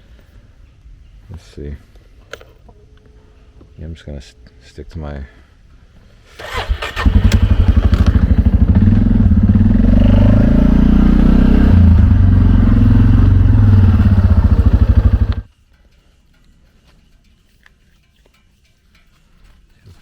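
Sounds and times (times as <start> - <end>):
atv engine running: 6.4 - 15.5.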